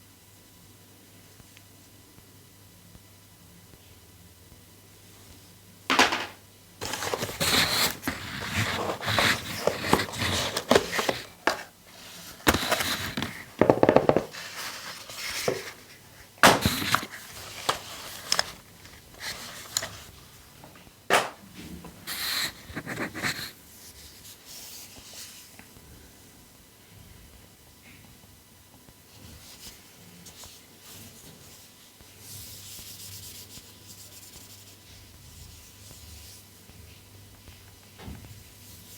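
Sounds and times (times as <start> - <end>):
plastic and paper packaging rustling: 5.9 - 20.5.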